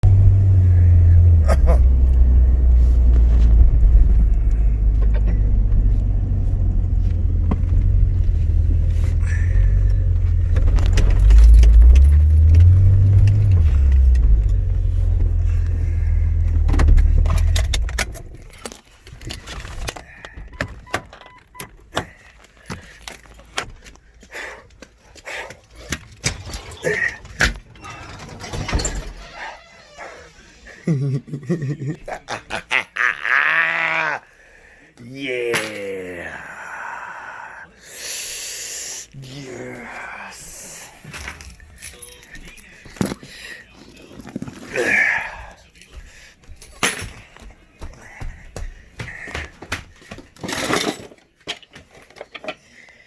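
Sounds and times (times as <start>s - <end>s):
car engine rumble: 0.0s - 19.9s
keys jangling: 7.9s - 24.0s, 41.0s - 44.8s, 45.5s - 47.5s, 50.4s - 52.1s.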